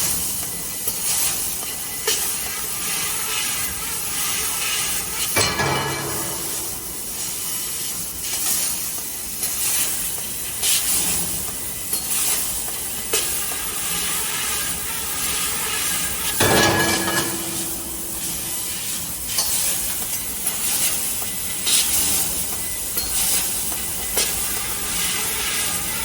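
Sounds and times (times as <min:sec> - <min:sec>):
laser cutter hiss: 0:00.0 - 0:26.0.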